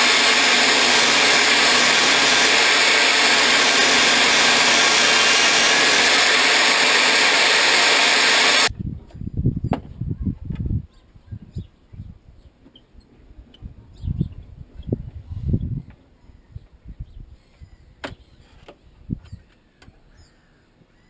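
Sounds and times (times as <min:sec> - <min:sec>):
power tool hissing: 0:00.0 - 0:08.7.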